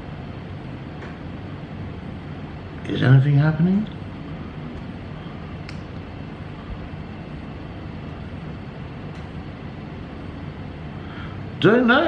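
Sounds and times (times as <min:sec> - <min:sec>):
low background rumble and hiss: 0:00.0 - 0:12.0.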